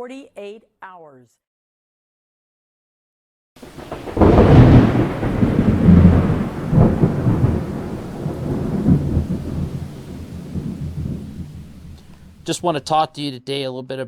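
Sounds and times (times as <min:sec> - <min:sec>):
thunder rumbling: 0:03.6 - 0:12.8.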